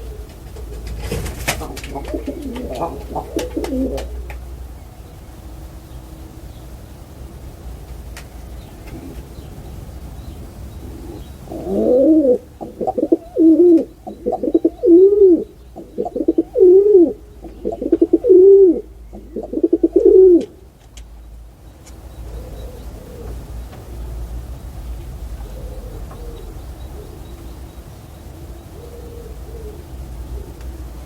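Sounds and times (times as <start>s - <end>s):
pigeon cooing: 0.0s - 4.4s, 10.8s - 20.7s, 22.3s - 23.6s, 25.3s - 27.7s, 28.4s - 31.0s.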